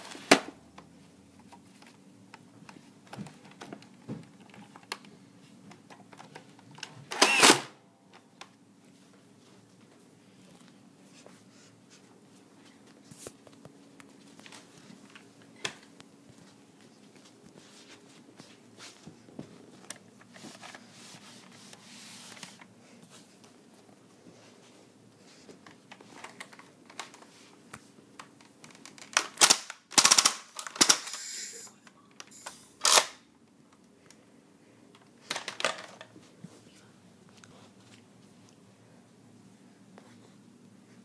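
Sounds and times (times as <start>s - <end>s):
toy blaster handling clicks: 7.1s - 7.7s, 29.2s - 31.6s, 32.2s - 33.2s
toy blaster firing bursts: 7.2s - 7.7s, 30.0s - 31.7s.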